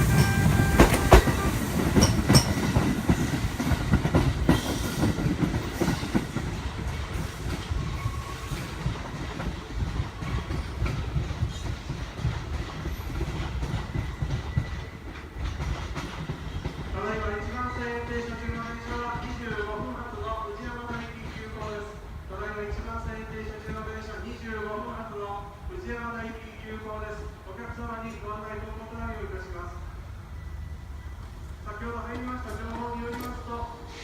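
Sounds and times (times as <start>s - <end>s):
train wheels clicking over rail joints: 0.0s - 17.1s, 32.1s - 34.0s
train low rumble: 0.0s - 34.0s.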